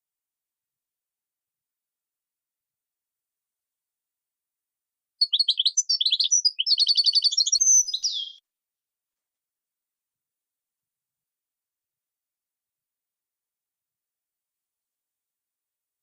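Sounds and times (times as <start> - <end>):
songbird singing: 5.2 - 8.4.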